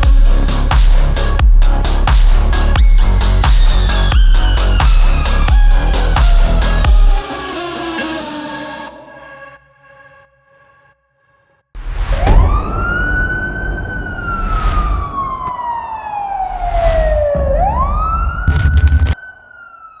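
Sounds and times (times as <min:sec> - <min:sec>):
siren wailing: 0:03.0 - 0:09.0, 0:12.3 - 0:20.0
heavy low rumble: 0:18.4 - 0:19.2.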